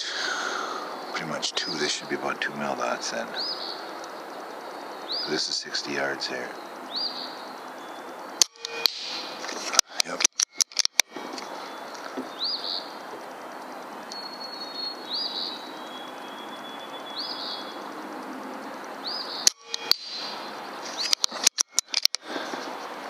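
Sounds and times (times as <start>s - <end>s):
steady outdoor hiss: 0.0s - 23.0s
sharp clicks: 8.4s - 11.5s, 18.2s - 20.2s, 20.9s - 22.3s
bird call: 19.0s - 22.7s.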